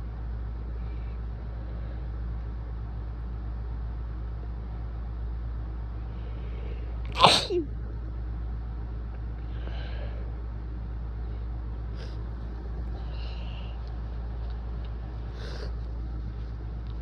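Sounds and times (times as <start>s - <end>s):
low background hum: 0.0s - 17.0s
man sneezing: 7.1s - 7.7s
man breathing and sniffing: 11.4s - 16.6s.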